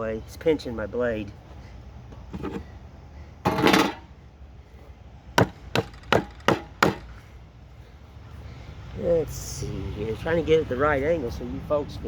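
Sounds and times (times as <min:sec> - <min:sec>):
hatchet chopping wood: 0:05.4 - 0:07.1.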